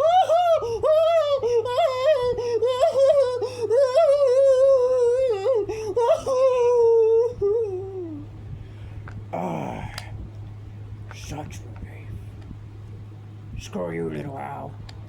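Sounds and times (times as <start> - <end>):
man whimpering and moaning: 0.0 - 8.2, 9.3 - 10.0
faint low hum: 0.0 - 15.0.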